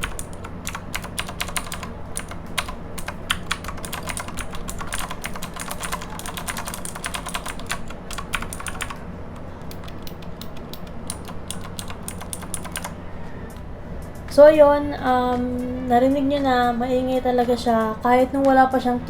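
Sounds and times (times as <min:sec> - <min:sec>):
clicky mechanical keyboard typing: 0:00.0 - 0:12.9.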